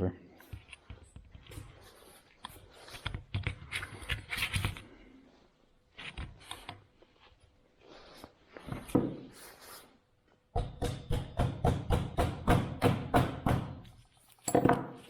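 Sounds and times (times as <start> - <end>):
small clicks taps and scrapes: 0.4 - 4.9.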